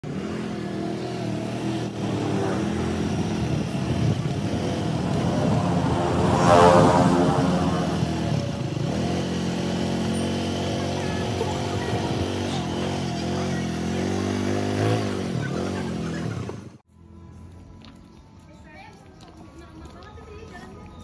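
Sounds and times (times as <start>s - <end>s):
vehicle engines running: 0.0s - 21.0s
vehicle passing close: 0.6s - 16.6s.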